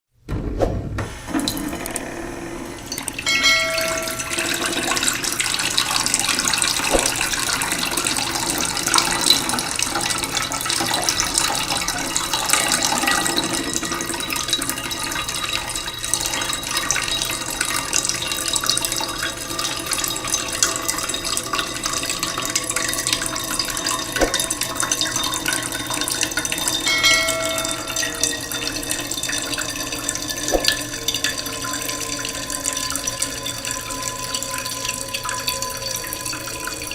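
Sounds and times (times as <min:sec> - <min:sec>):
short pitched tone: 0:03.3 - 0:04.8, 0:26.9 - 0:28.3.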